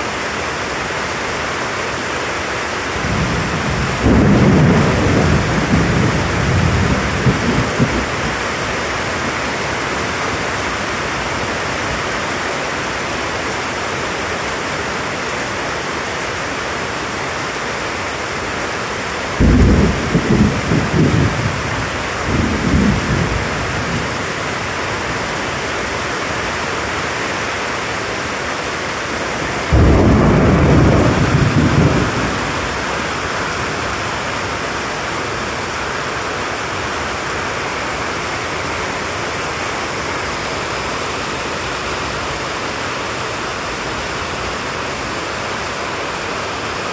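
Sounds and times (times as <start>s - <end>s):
heavy rain falling: 0.0s - 46.9s
thunder rumbling: 3.0s - 9.2s, 19.4s - 24.9s, 29.4s - 34.0s.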